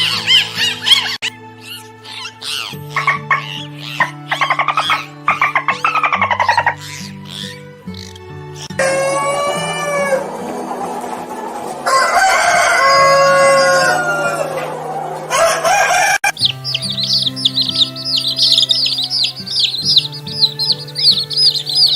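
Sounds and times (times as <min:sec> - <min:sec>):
small birds chirping: 0:00.0 - 0:08.9, 0:13.9 - 0:21.9
background music with low notes: 0:00.0 - 0:21.9
rooster crowing: 0:08.7 - 0:21.9.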